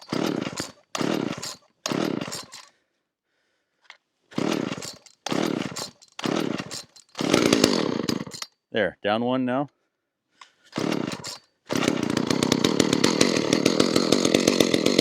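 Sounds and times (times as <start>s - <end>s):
chainsaw engine pull-start sputtering: 0.0s - 2.7s, 4.3s - 8.5s, 10.7s - 15.0s.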